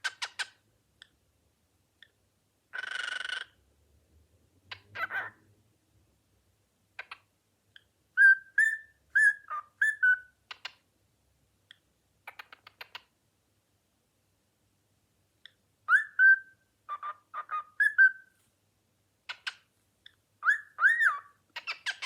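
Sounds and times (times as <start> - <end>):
cockatiel chatter calls: 0.0 - 0.6, 2.7 - 3.6, 4.7 - 5.4, 15.9 - 18.3, 20.4 - 22.0
cockatiel whistling: 8.2 - 10.3, 15.9 - 18.3, 20.4 - 22.0.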